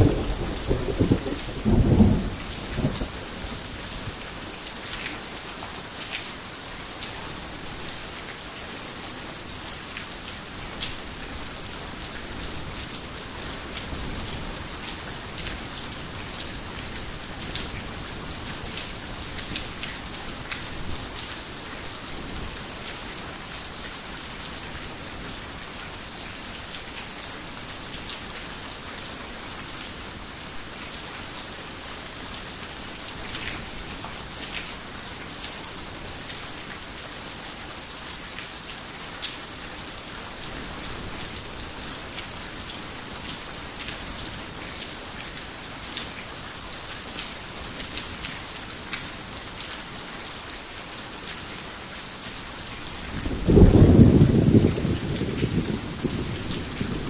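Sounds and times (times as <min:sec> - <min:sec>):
thunderclap: 0:00.0 - 0:03.1, 0:53.3 - 0:57.0
heavy rain: 0:00.0 - 0:57.0.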